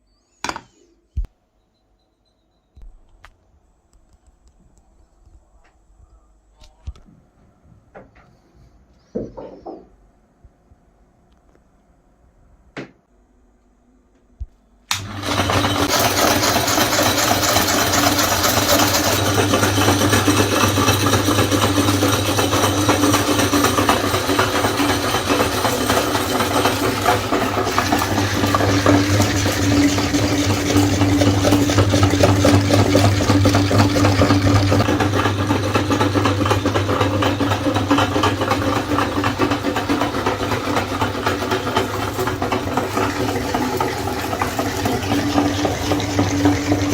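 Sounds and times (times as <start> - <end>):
electric meat grinder motor humming: 14.9 - 46.9.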